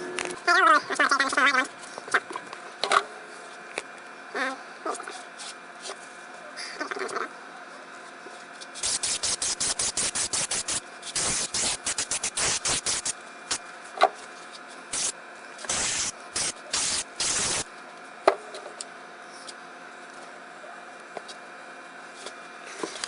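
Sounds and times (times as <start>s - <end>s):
aerosol can spraying: 8.8s - 13.6s, 14.9s - 17.7s.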